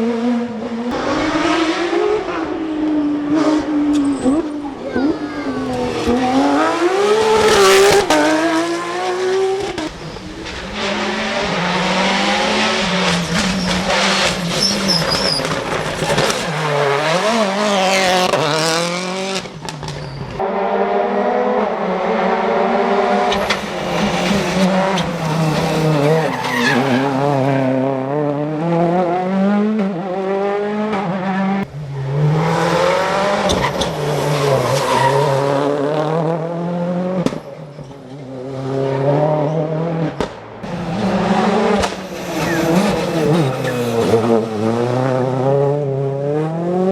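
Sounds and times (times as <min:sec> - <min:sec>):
rally car engines revving: 0:00.0 - 0:46.9
tyre squeal: 0:13.4 - 0:15.6, 0:19.8 - 0:20.4, 0:23.4 - 0:27.3, 0:42.0 - 0:44.4.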